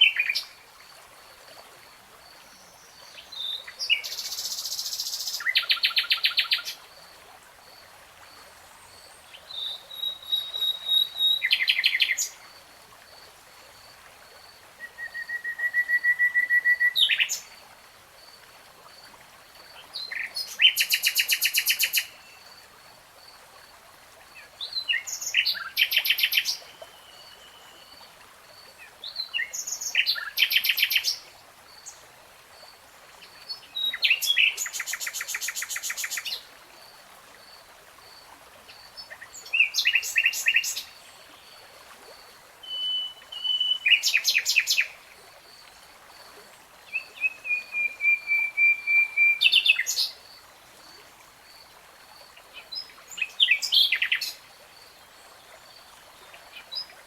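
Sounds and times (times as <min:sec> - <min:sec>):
nightingale singing: 0:09.5 - 0:12.3, 0:42.6 - 0:44.9, 0:46.9 - 0:50.2.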